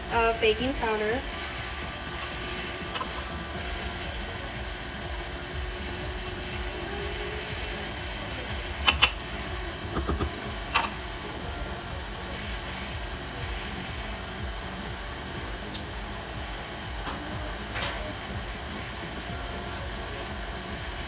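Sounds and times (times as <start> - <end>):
stand mixer motor running: 0.0 - 21.0
sharp clicks: 8.8 - 11.1.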